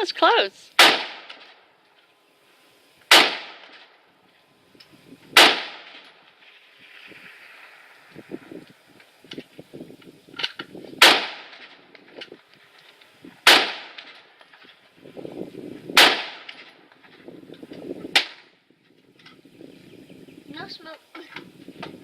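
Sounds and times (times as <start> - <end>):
loud gunshots with echo: 0.8 - 1.3, 3.1 - 3.6, 5.4 - 5.9, 11.0 - 11.5, 13.4 - 14.0, 16.0 - 16.5.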